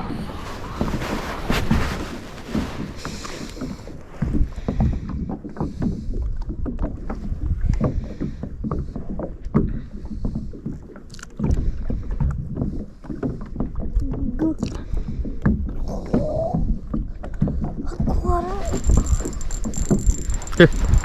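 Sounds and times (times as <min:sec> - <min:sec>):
water lapping against boat hull: 0:00.0 - 0:21.0
knocks and bumps in boat: 0:01.8 - 0:10.5.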